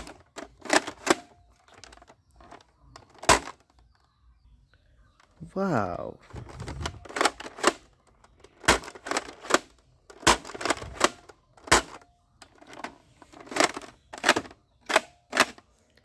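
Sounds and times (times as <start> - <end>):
plastic toy gun clicks: 0.0 - 3.6, 6.9 - 15.6.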